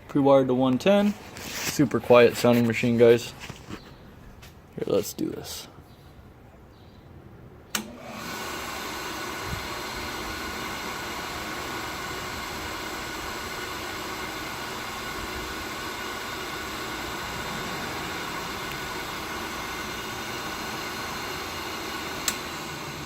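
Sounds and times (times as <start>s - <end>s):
switch click: 7.7s - 8.0s, 22.2s - 22.5s
grinder motor whirring: 7.8s - 23.0s.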